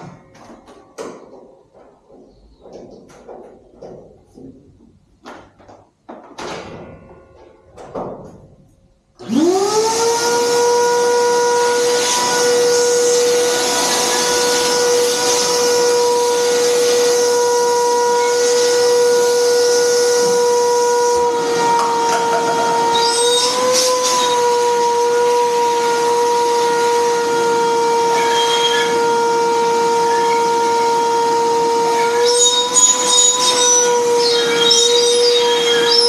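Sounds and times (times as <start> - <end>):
power tool motor whining: 9.2 - 36.0.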